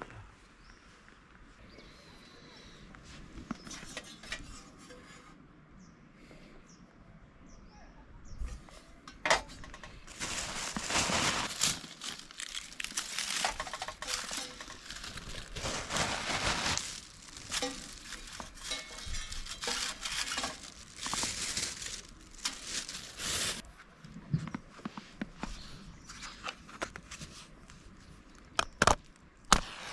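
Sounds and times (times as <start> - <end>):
rustling and crinkling: 9.4 - 29.8.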